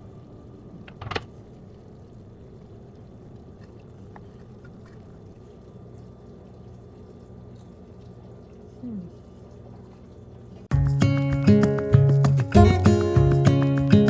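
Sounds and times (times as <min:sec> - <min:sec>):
water pouring: 0:01.4 - 0:10.7.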